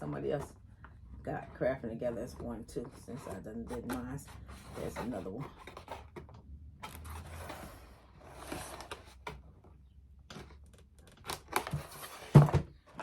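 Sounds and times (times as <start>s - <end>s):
foam board rustling and scraping: 2.2s - 6.2s.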